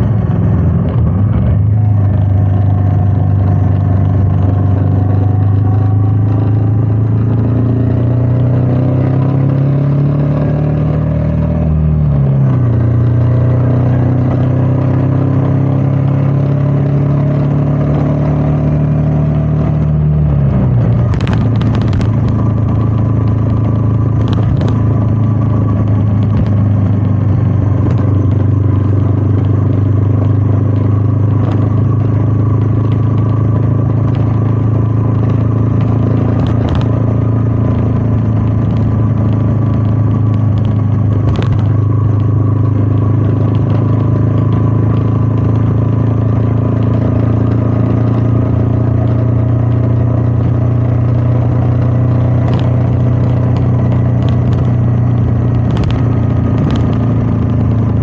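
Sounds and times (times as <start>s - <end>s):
motorcycle engine revving: 0.0s - 58.0s
sharp clicks: 37.7s - 42.8s, 52.4s - 58.0s.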